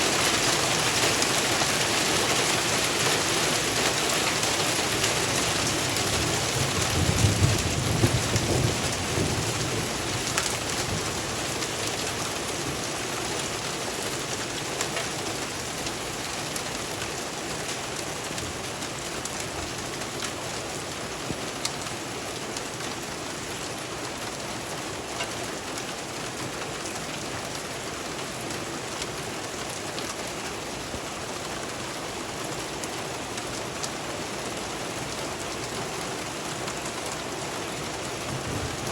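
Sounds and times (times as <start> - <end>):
hailstones ticking: 0.0 - 20.4
low rumble of thunder: 6.0 - 11.6, 38.2 - 38.9.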